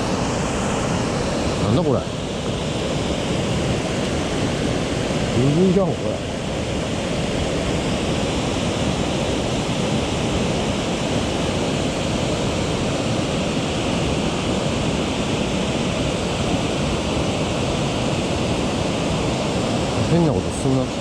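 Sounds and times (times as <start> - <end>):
stream water rushing: 0.0 - 21.0.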